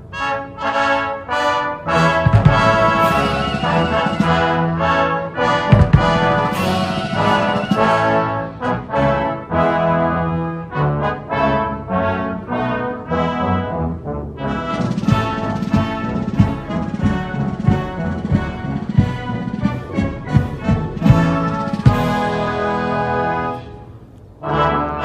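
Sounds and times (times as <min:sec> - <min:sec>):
brass band playing anthem: 0:00.0 - 0:25.0
drum strokes: 0:02.2 - 0:08.7, 0:14.7 - 0:23.0.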